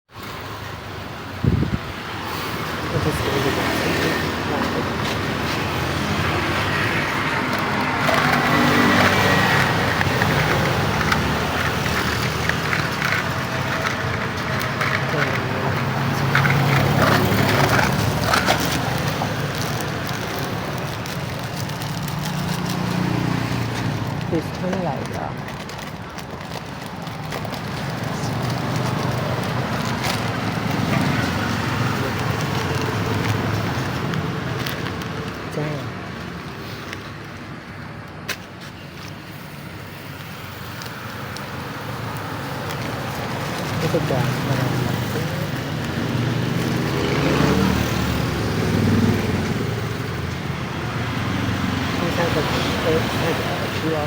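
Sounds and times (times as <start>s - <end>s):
indistinct voices: 2.8s - 20.9s, 27.6s - 33.6s, 51.9s - 54.0s.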